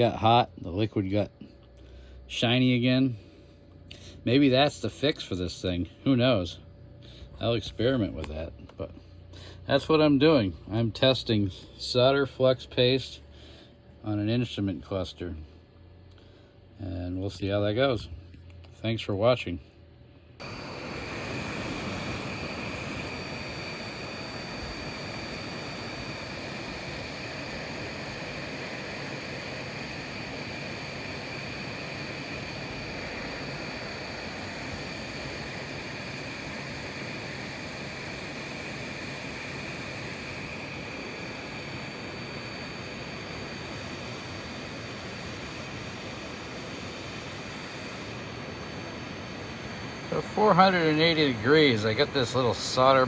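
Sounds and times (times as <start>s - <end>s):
hot-air gun blowing: 20.4s - 53.0s.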